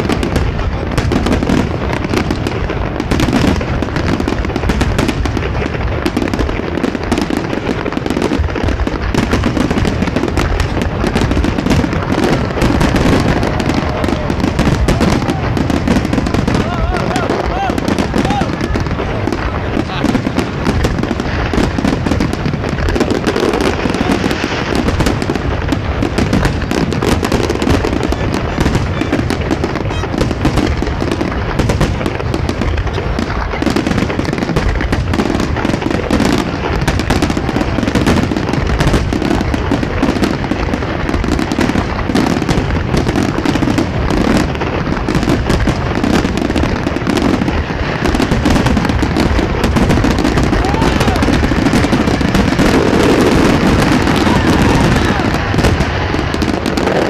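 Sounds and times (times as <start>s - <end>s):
fireworks bursting: 0.0s - 57.0s.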